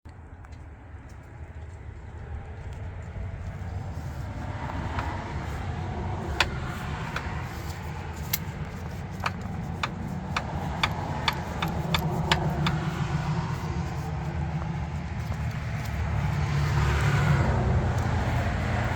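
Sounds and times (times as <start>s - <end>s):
engine low rumble: 0.1s - 18.9s
sharp knocking clicks: 4.9s - 5.2s, 6.3s - 7.5s, 8.2s - 13.1s.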